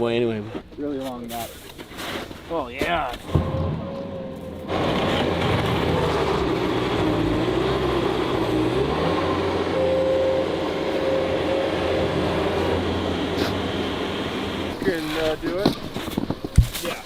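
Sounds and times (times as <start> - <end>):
heavy machine engine whining: 3.2 - 15.4.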